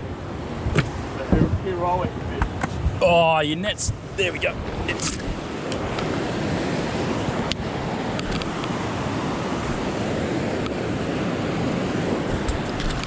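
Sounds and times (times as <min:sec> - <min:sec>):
fast-flowing water rushing: 0:03.2 - 0:13.0.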